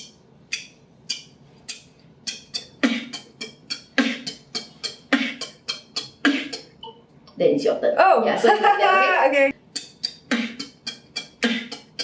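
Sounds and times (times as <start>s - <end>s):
beatboxing kick drum hits: 0.0s - 6.9s, 9.6s - 12.0s
beatboxing hi-hat sounds: 0.0s - 7.1s, 9.5s - 12.0s.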